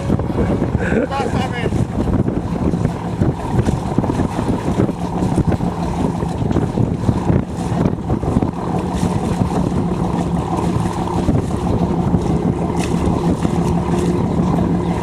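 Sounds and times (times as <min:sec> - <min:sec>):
boat engine running: 0:00.0 - 0:15.0
wind buffeting microphone: 0:00.0 - 0:15.0.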